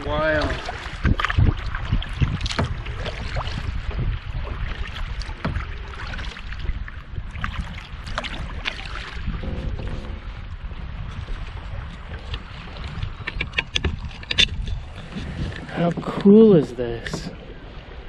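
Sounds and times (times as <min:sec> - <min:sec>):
paddle splashing water: 0:00.0 - 0:18.0
steady low rumble: 0:05.5 - 0:15.6.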